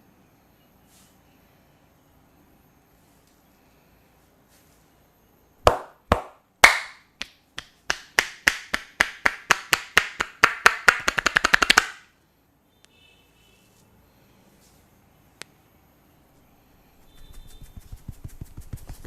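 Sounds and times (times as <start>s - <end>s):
hand strikes clapping: 5.7s - 12.0s.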